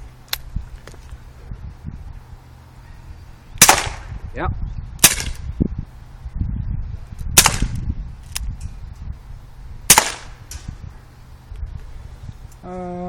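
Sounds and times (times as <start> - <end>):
air pistol shots: 3.6 - 4.2, 5.0 - 5.4, 7.4 - 7.8, 9.9 - 10.7.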